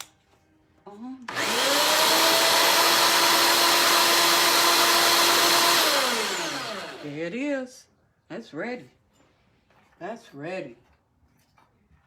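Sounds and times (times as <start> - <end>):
electric drill motor whining: 1.3 - 7.2.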